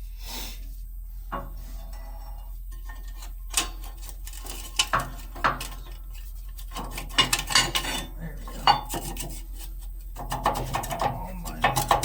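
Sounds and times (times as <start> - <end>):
metal bolt clinking and knocking: 6.8 - 9.1.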